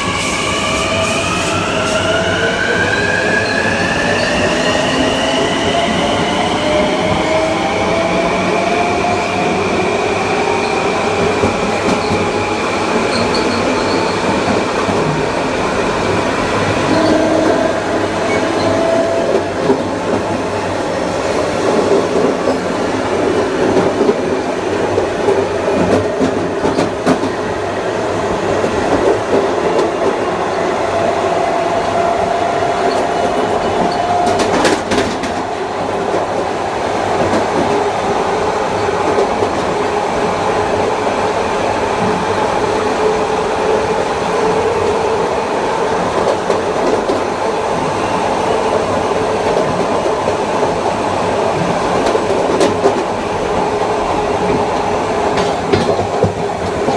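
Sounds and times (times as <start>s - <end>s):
train wheels clattering on rails: 10.6s - 30.5s, 31.6s - 41.3s, 44.2s - 56.9s.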